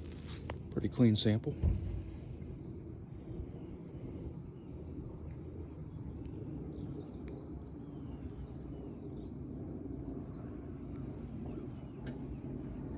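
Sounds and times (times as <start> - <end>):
insects trilling: 0.0 - 0.6
combine harvester rumble: 0.0 - 2.6.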